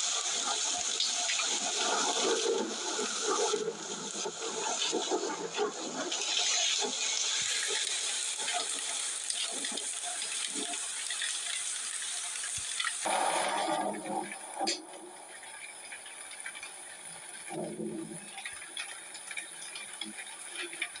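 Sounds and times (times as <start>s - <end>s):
water rushing: 7.2s - 11.3s.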